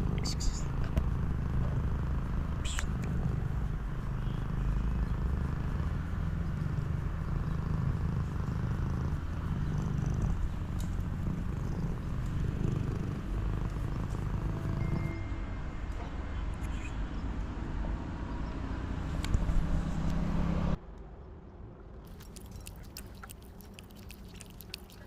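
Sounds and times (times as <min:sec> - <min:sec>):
cat purring: 0:00.0 - 0:15.1, 0:22.1 - 0:25.0.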